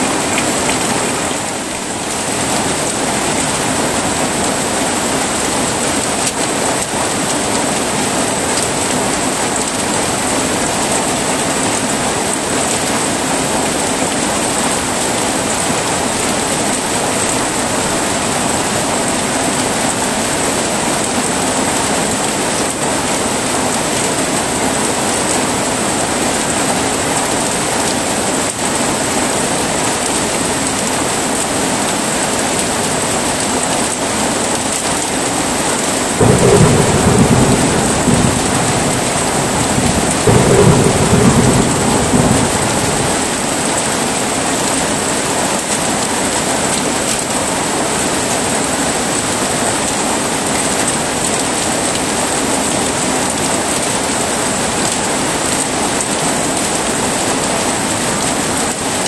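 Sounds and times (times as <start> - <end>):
heavy rain falling: 0.0 - 59.0
thunder rumbling: 36.0 - 44.3.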